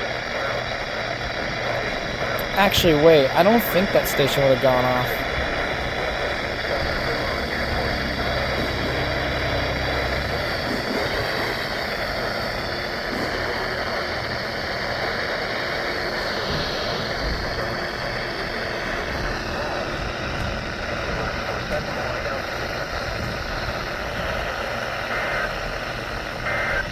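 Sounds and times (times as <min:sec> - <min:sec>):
radio static hiss: 0:00.0 - 0:26.9
low hum: 0:01.4 - 0:26.9.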